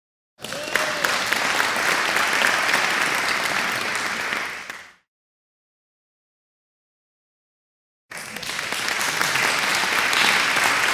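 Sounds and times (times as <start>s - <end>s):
large crowd applauding: 0.4s - 5.0s, 8.1s - 10.9s.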